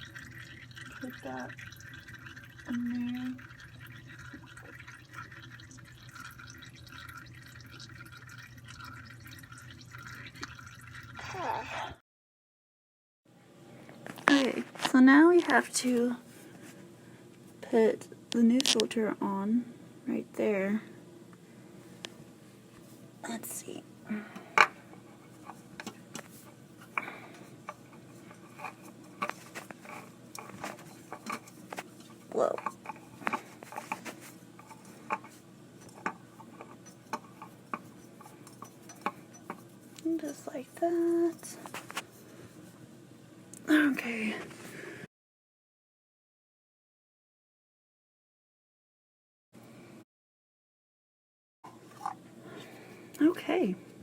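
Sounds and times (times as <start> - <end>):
oil dripping into pan: 0.0 - 11.2
hands handling oil filter: 25.4 - 40.0.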